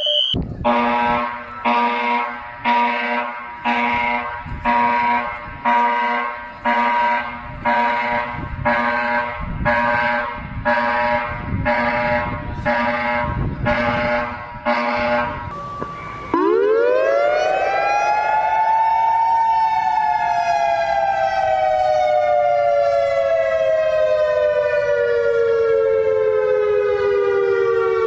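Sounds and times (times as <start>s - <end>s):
electronic alarm horn blasts: 0.0s - 18.0s.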